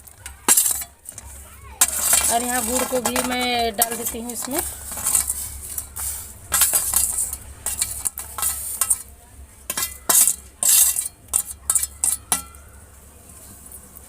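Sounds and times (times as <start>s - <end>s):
metal spoon stirring in pot: 0.0s - 12.8s.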